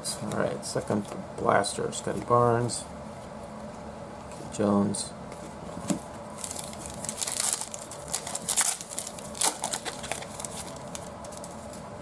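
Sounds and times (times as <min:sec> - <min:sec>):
card pack wrapper crinkling: 0:06.4 - 0:11.8.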